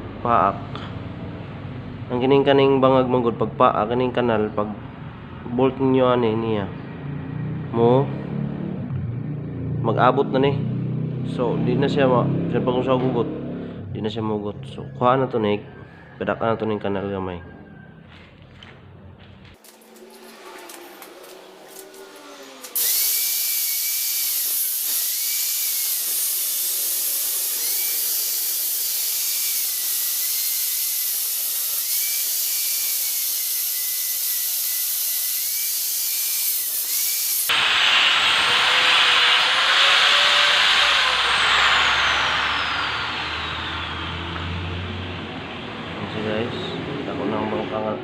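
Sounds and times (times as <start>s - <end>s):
power drill whining: 19.6s - 45.6s.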